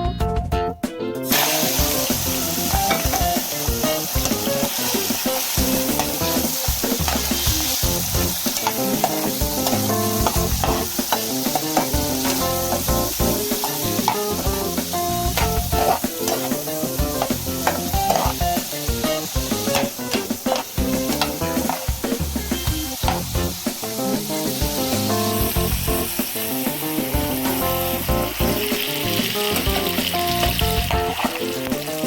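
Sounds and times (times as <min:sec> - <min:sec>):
faint background music: 0:00.0 - 0:32.0
food sizzling in a pan: 0:01.2 - 0:32.0
spatula scraping a pan: 0:03.9 - 0:22.1.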